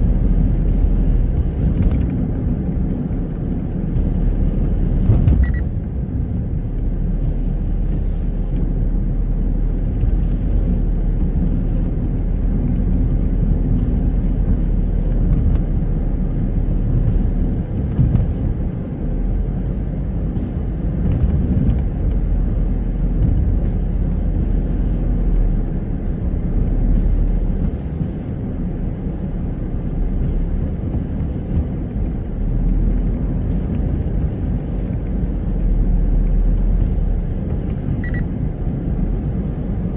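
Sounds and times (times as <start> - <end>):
car engine and road noise: 0.0 - 39.9.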